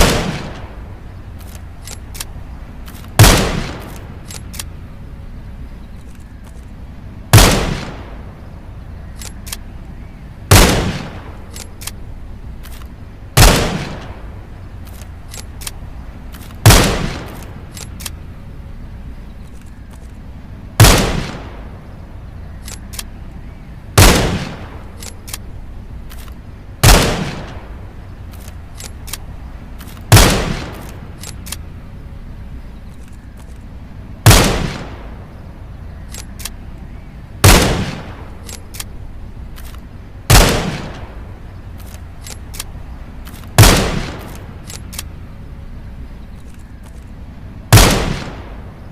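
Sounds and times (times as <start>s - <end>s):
rifle shots: 0.0s - 4.8s, 7.3s - 8.4s, 10.5s - 18.3s, 20.8s - 21.8s, 23.9s - 31.8s, 34.2s - 35.3s, 37.4s - 45.2s, 47.7s - 48.9s
faint small clicks: 1.3s - 3.2s, 3.8s - 4.8s, 5.8s - 6.8s, 9.1s - 9.7s, 11.4s - 12.0s, 14.8s - 16.6s, 17.2s - 18.3s, 19.3s - 20.3s, 22.6s - 23.2s, 24.9s - 26.6s, 27.5s - 30.1s, 30.7s - 31.7s, 32.7s - 33.8s, 36.0s - 36.9s, 38.4s - 40.0s, 41.7s - 45.2s, 46.2s - 47.3s.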